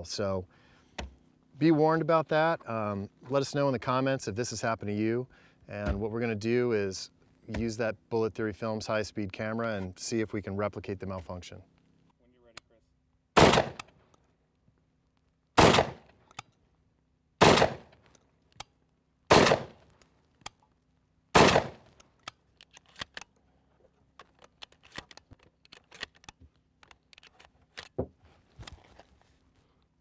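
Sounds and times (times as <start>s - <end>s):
shotgun shots: 13.4s - 13.9s, 15.6s - 16.1s, 17.4s - 17.9s, 19.3s - 19.8s, 21.3s - 21.9s
small clicks and knocks: 21.9s - 29.2s.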